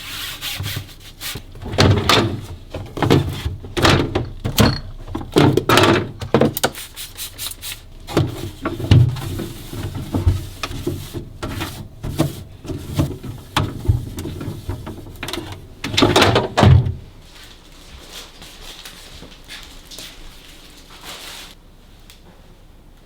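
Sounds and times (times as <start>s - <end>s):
kitchen objects knocked and set down: 1.6s - 6.6s.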